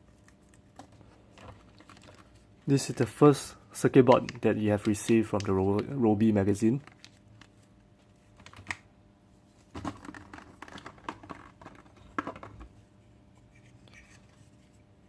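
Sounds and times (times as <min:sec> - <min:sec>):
plastic parts clicking and rustling: 0:00.7 - 0:03.0, 0:03.8 - 0:07.6, 0:09.7 - 0:12.7.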